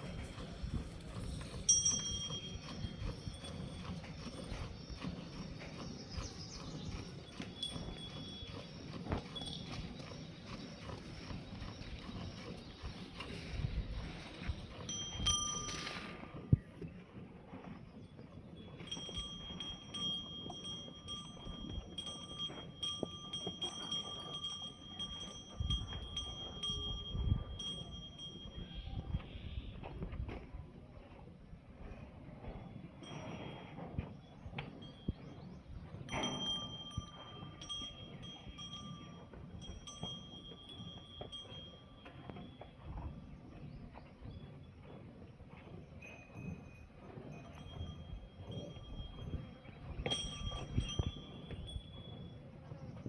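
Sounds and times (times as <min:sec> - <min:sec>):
cattle bells jingling: 0:00.0 - 0:16.5, 0:18.5 - 0:29.0, 0:33.0 - 0:53.0
hooves knocking on hard ground: 0:00.0 - 0:17.0.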